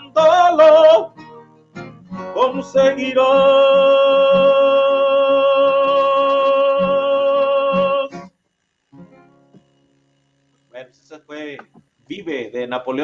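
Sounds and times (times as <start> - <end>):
man singing: 0.0 - 1.1, 2.3 - 8.1
soft guitar accompaniment: 0.0 - 10.6.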